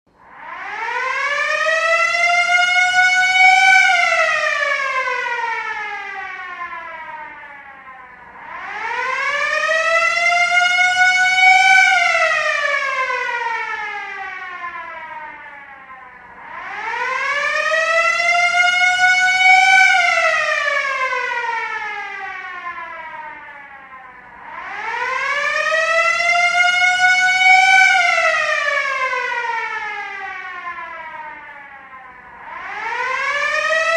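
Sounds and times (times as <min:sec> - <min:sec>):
air-raid siren wailing: 0:00.2 - 0:33.9.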